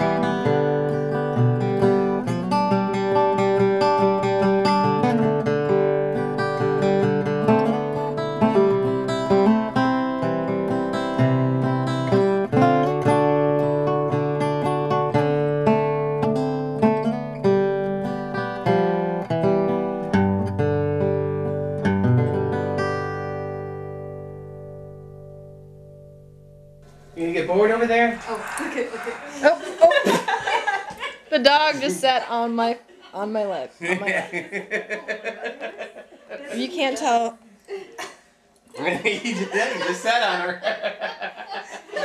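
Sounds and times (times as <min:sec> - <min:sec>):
acoustic guitar music: 0:00.0 - 0:37.4.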